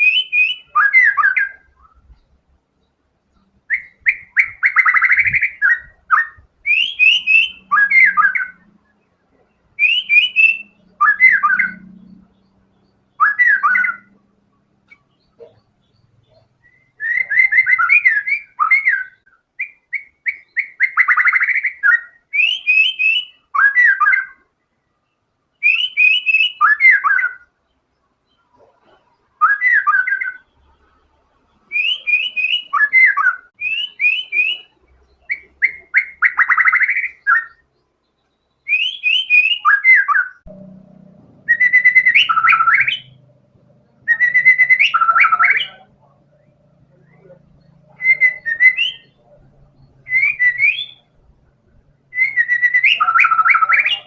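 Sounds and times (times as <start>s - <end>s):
songbird whistling: 0.0s - 2.2s, 3.3s - 14.2s, 14.8s - 24.5s, 25.6s - 27.6s, 28.3s - 30.6s, 31.6s - 40.5s, 41.4s - 43.3s, 43.9s - 51.2s, 52.0s - 54.0s
faint low hum: 40.4s - 53.4s.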